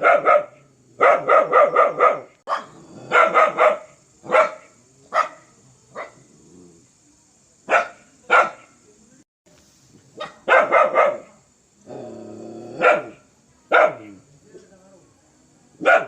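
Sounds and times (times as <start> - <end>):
dog barking fiercely: 0.0 - 6.3, 7.7 - 8.7, 10.2 - 11.4, 12.7 - 14.2, 15.8 - 16.0.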